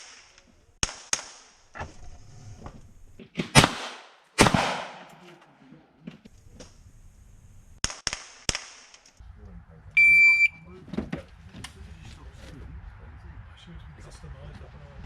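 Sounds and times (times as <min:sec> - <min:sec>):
gunshots: 0:03.4 - 0:05.4.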